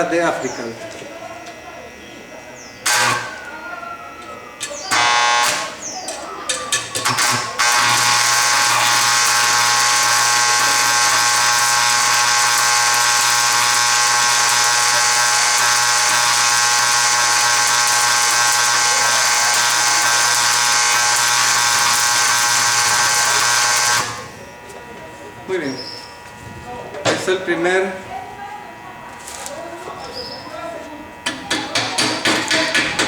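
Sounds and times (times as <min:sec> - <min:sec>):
arc welding hiss and hum: 0:02.8 - 0:03.6, 0:04.6 - 0:26.3, 0:30.5 - 0:33.0.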